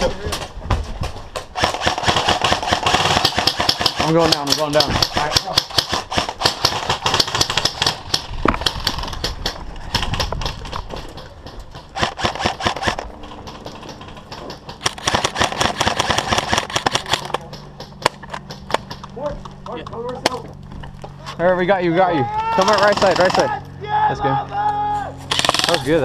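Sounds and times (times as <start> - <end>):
airsoft guns firing bursts: 1.4 - 19.0, 22.6 - 23.5, 25.3 - 25.9.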